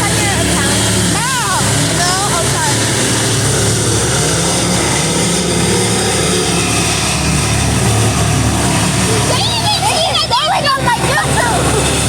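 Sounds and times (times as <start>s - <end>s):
broad rushing noise: 0.0s - 12.0s
machinery engine running loudly: 0.0s - 12.0s.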